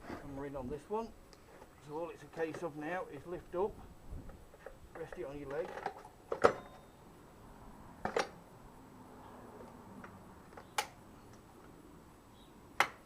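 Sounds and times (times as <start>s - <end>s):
sharp metal clunks: 5.0s - 6.9s.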